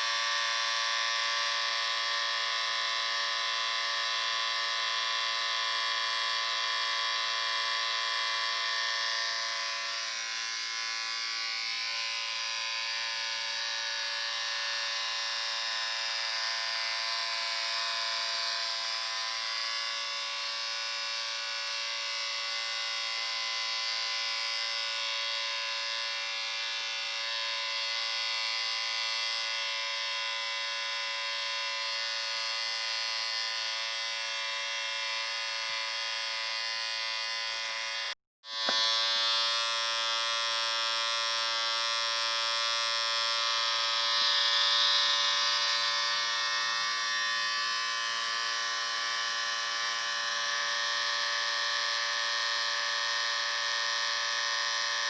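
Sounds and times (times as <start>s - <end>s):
electric shaver buzzing: 0.0s - 55.0s.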